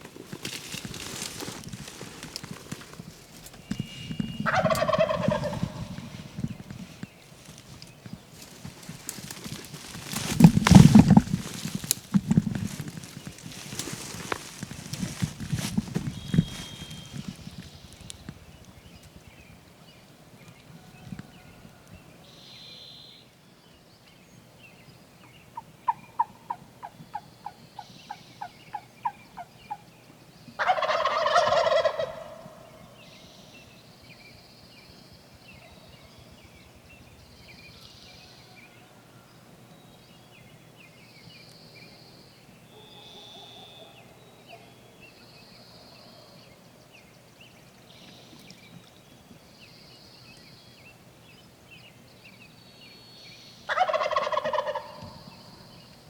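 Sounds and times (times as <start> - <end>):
songbirds chirping: 0.0 - 56.0
turkey gobbling: 0.5 - 7.8, 8.4 - 17.4, 25.9 - 26.9, 30.6 - 32.6, 53.7 - 55.3
turkey yelps: 4.4 - 6.3, 30.6 - 32.6, 53.7 - 55.2.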